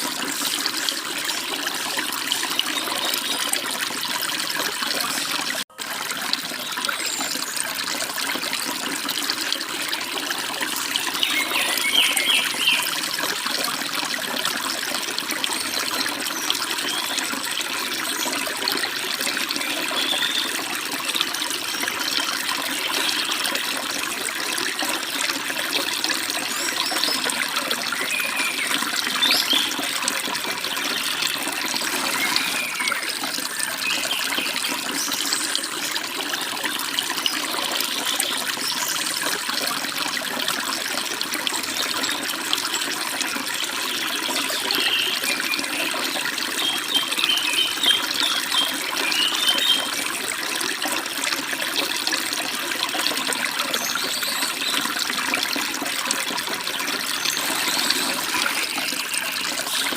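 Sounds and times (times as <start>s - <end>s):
birds chirping: 11.1s - 12.9s, 28.0s - 29.9s, 43.9s - 46.0s.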